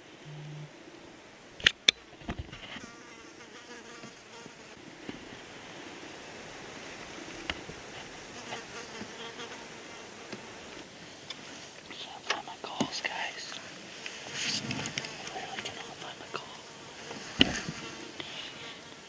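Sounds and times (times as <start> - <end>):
insect buzzing: 2.5 - 4.8, 7.1 - 11.2, 11.9 - 19.0.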